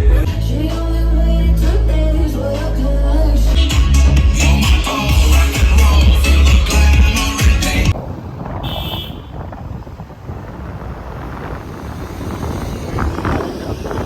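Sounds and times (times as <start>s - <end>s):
background music: 0.0s - 8.0s
traffic noise: 0.0s - 14.0s
wind buffeting microphone: 7.9s - 14.0s.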